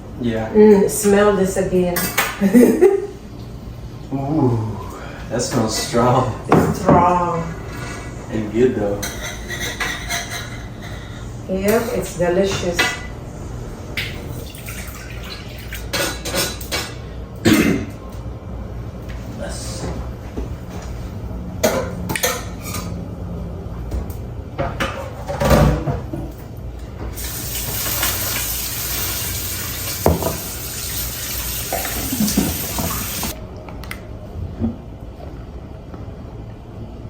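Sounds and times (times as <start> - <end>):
dishes and cutlery clinking: 9.0 - 13.1, 15.6 - 18.0, 21.6 - 23.0
tap running: 27.0 - 33.4.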